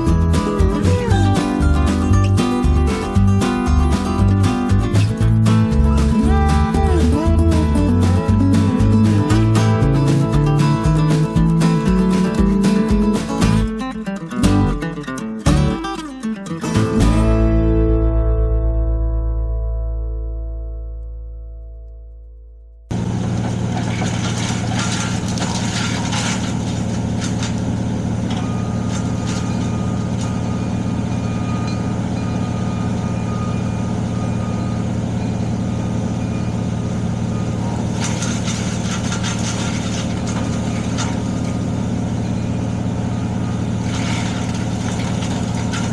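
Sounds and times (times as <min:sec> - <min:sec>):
heavy engine running: 0:00.0 - 0:17.7, 0:22.9 - 0:45.9
music: 0:00.0 - 0:22.9.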